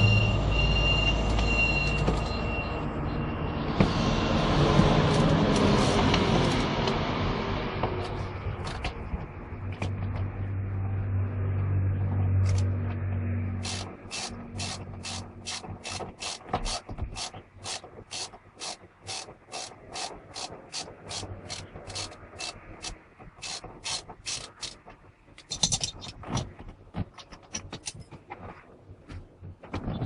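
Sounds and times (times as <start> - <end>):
knocks and scrapes: 12.4 - 30.0
ratchet wrench clicking: 13.6 - 24.8.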